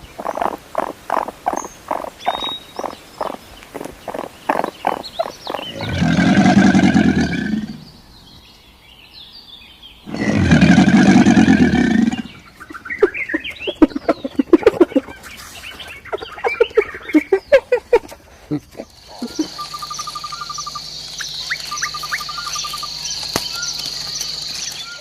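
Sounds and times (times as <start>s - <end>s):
loud animal calls: 0.2s - 8.0s, 10.1s - 15.4s, 18.8s - 23.8s.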